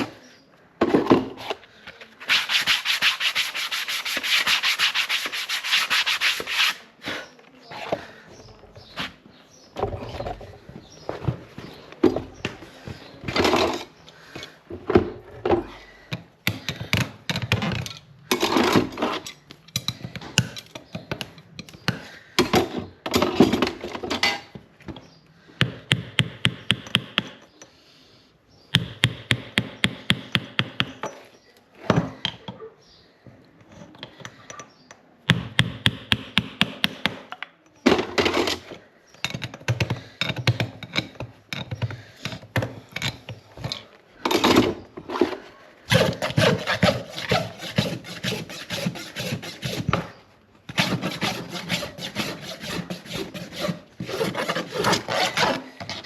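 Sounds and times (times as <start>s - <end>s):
hand tools scraping hoof: 2.2s - 6.9s, 45.1s - 56.0s.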